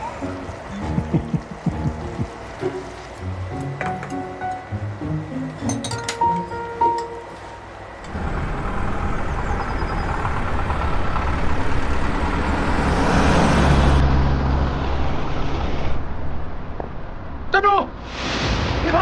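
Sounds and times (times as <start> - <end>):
musical notes: 0.0 - 7.9
vehicle engine and road rumble: 0.0 - 18.1.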